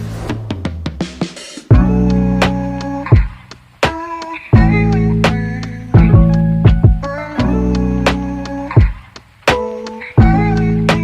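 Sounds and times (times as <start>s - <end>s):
sharp percussion hits: 0.0s - 2.1s
sustained bass: 1.7s - 3.2s, 4.6s - 8.8s, 10.2s - 11.0s.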